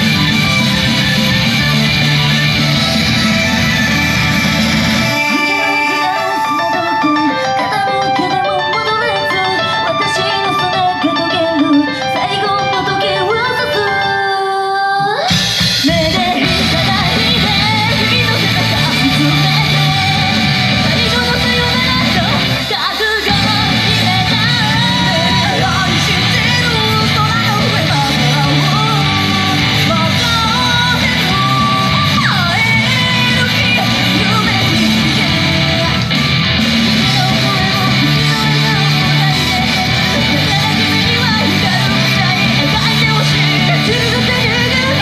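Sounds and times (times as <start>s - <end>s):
group singing rock song: 15.8s - 45.0s.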